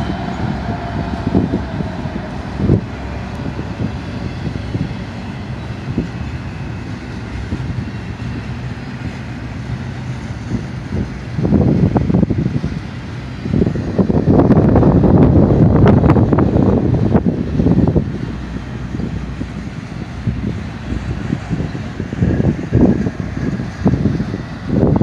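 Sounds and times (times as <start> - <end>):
freight train rumbling past: 0.0 - 25.0
wind buffeting microphone: 0.0 - 25.0.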